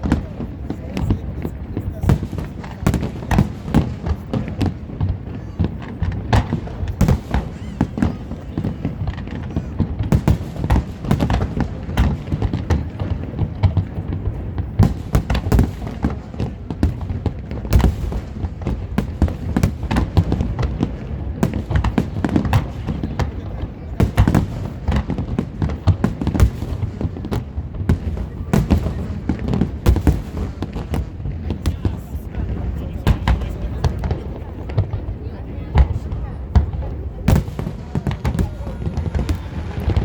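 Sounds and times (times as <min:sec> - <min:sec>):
fireworks bursting: 0:00.0 - 0:40.0.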